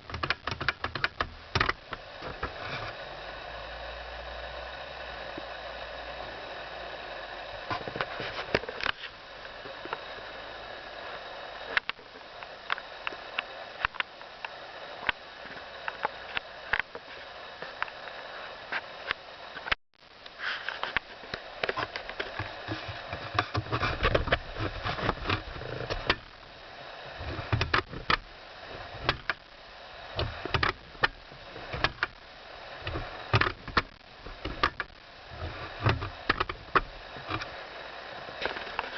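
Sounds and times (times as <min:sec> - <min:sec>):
seat backrest creaking and clicking: 0:00.0 - 0:03.0, 0:21.7 - 0:26.3, 0:27.2 - 0:28.3, 0:29.0 - 0:29.4, 0:30.2 - 0:32.2, 0:32.8 - 0:37.5
steady hiss: 0:00.0 - 0:38.9.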